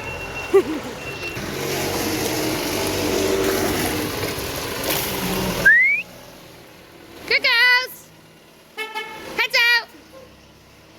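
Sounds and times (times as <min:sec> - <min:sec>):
vehicle engine running: 0:00.5 - 0:10.9
rising whistle-like tone: 0:05.6 - 0:06.1.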